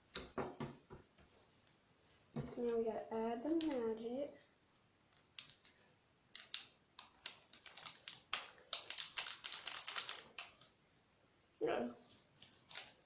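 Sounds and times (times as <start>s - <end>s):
powder being shaken out: 7.3s - 10.7s
plastic bag crinkling: 7.4s - 10.7s, 12.4s - 13.0s.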